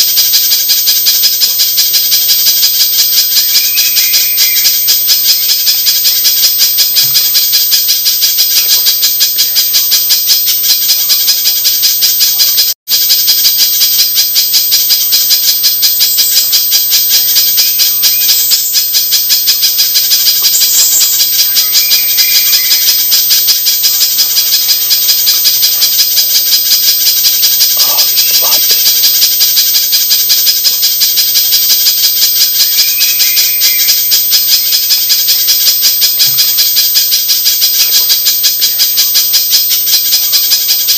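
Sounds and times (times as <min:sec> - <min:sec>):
bird calling high chips: 0:03.0 - 0:07.4, 0:08.0 - 0:09.6, 0:16.0 - 0:29.8, 0:32.1 - 0:35.4.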